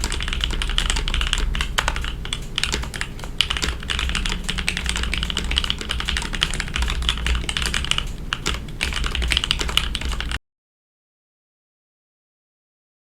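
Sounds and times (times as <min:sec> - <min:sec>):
fast typing on mechanical keyboard: 0:00.0 - 0:10.4.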